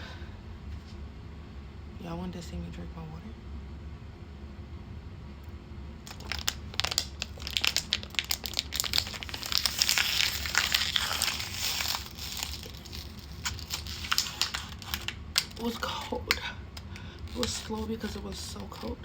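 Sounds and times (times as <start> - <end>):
plastic bottle crinkling: 6.0 - 19.0.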